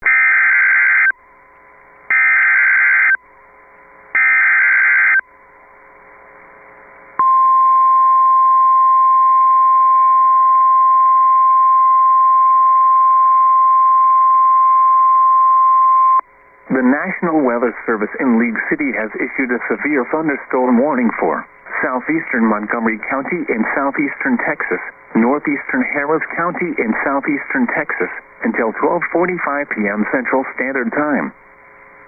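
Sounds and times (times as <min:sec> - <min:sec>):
steady warning alarm tone: 0:00.0 - 0:03.2, 0:04.1 - 0:05.3.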